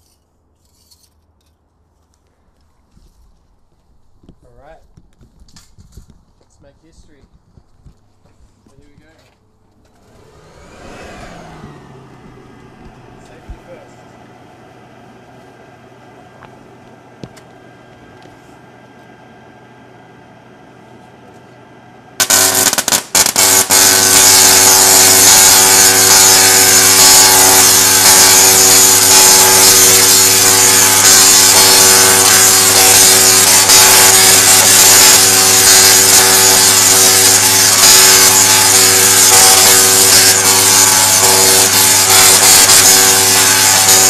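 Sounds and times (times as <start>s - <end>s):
tesla coil buzzing crackle: 22.2s - 44.0s.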